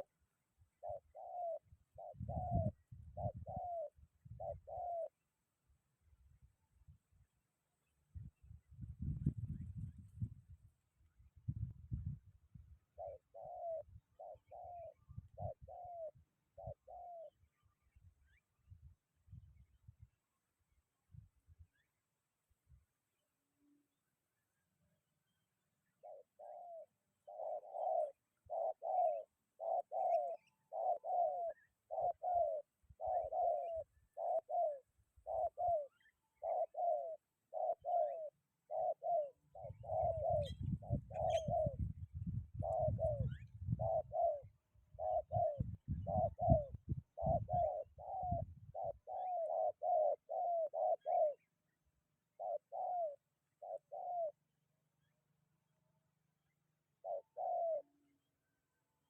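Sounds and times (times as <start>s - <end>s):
dove cooing: 0.7s - 5.2s, 12.8s - 17.4s, 26.0s - 51.6s, 52.2s - 54.5s, 57.0s - 58.1s
wind rumbling on microphone: 1.6s - 4.6s, 8.1s - 12.8s, 18.0s - 20.1s, 39.6s - 49.0s.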